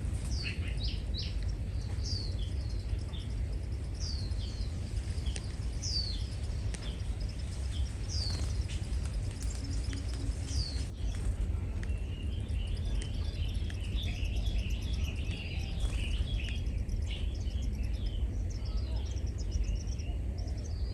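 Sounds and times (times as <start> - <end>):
steady low rumble: 0.0 - 20.9.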